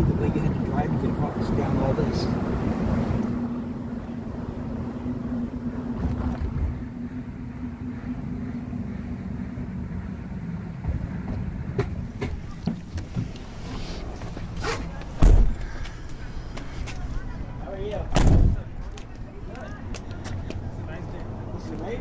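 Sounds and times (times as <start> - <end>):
van engine and road hum: 0.0 - 22.0
loud thump: 15.2 - 15.6, 18.1 - 18.7.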